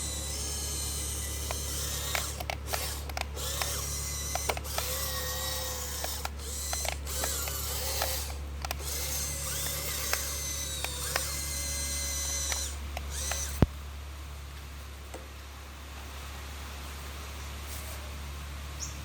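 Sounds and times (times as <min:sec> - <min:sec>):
small electric motors whining: 0:00.0 - 0:13.7
low electrical hum: 0:00.0 - 0:19.0
ratchety gear clicks: 0:00.4 - 0:13.6
sharp click: 0:01.4 - 0:05.0, 0:05.9 - 0:11.4, 0:12.3 - 0:13.7.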